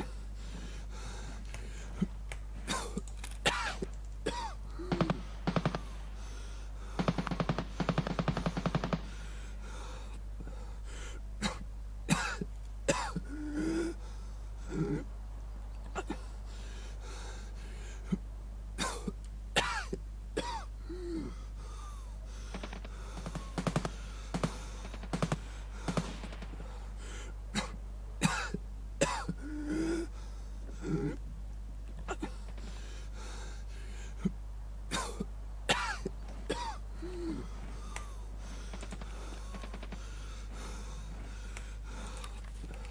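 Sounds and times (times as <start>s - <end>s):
low electrical hum: 0.0s - 42.9s
throat clearing: 1.7s - 5.3s, 11.4s - 15.1s, 18.8s - 22.0s, 27.5s - 31.3s, 31.9s - 32.5s, 34.0s - 38.2s
person coughing: 2.7s - 5.2s, 11.4s - 14.0s, 18.8s - 21.4s, 27.5s - 30.2s, 30.8s - 31.2s, 34.9s - 37.5s.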